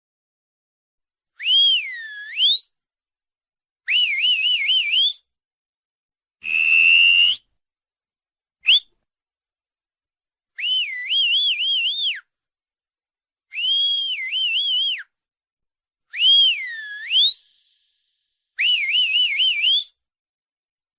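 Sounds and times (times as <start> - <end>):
high whistles: 6.4 - 7.5, 8.6 - 8.9, 16.1 - 20.0.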